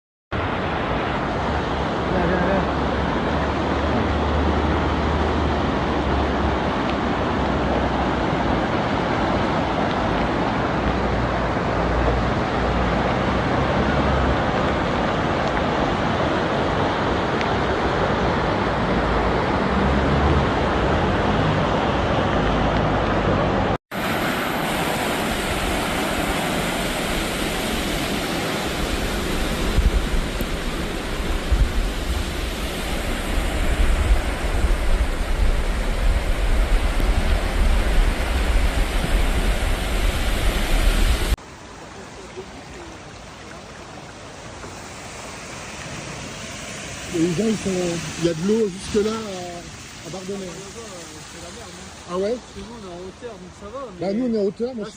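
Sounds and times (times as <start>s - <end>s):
floodwater rushing: 0.4s - 54.9s
wind buffeting microphone: 25.0s - 41.4s.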